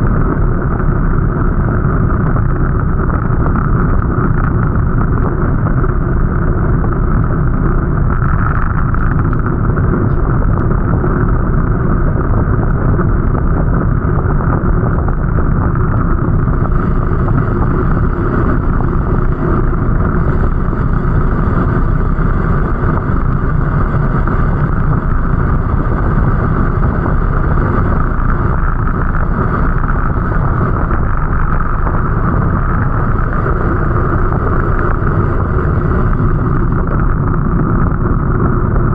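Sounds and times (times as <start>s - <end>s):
vehicle engine rumble: 0.0s - 38.9s
wind on microphone: 0.0s - 38.9s.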